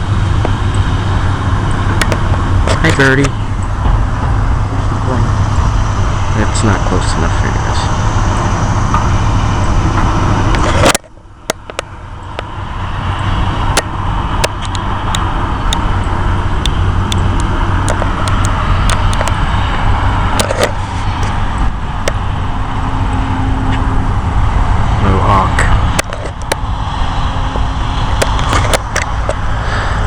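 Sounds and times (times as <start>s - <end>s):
engine rumble: 0.0s - 30.0s
sharp clicks: 16.6s - 19.4s.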